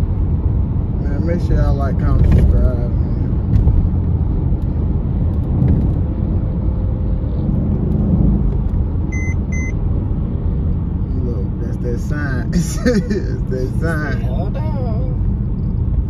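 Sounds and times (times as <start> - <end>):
car engine rumble: 0.0 - 16.0
road noise: 0.0 - 16.0
short electronic beeps: 9.1 - 9.8.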